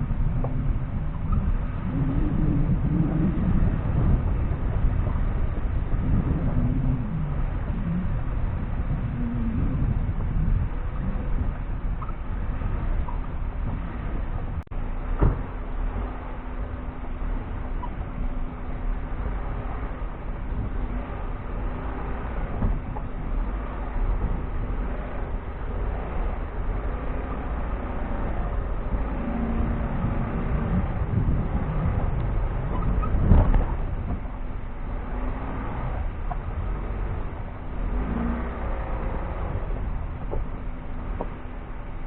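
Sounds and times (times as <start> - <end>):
vehicle engine under load: 0.0 - 42.0
rattles and knocks from bumps: 32.2 - 34.5.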